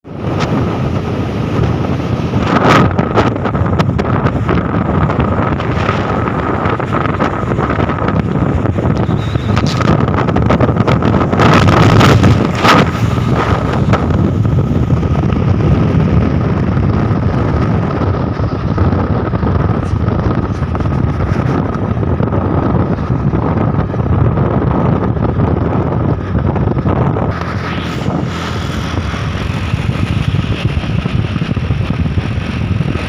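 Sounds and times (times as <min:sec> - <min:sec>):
truck running on road: 0:00.0 - 0:33.0
wind buffeting microphone: 0:00.0 - 0:33.0.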